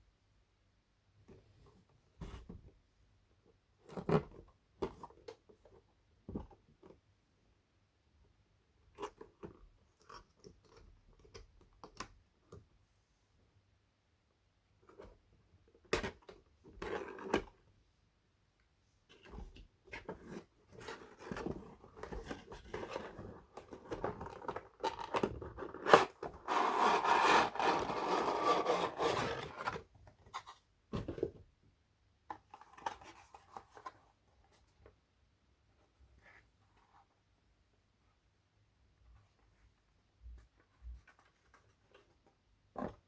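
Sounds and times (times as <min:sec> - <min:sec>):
packaging rubbing and scraping: 0:22.6 - 0:29.8.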